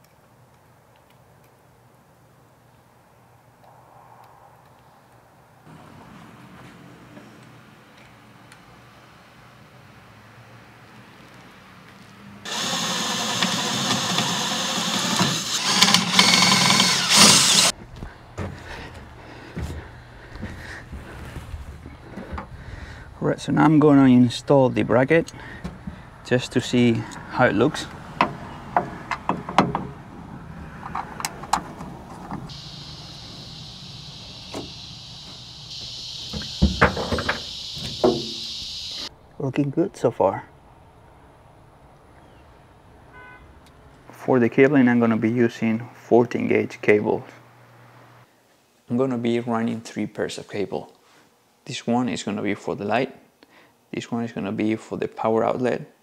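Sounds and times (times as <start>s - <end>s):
high-pitched buzz: 12.5s - 17.7s, 32.5s - 43.5s
power drill running: 12.5s - 17.8s, 32.5s - 39.1s.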